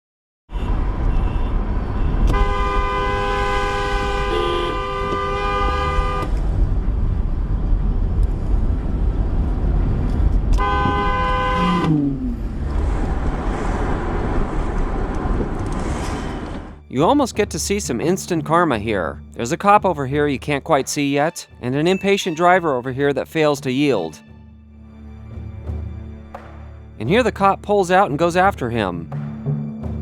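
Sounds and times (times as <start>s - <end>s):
car horn blasts: 0.5s - 6.4s, 10.6s - 12.2s
low traffic rumble: 0.5s - 30.0s.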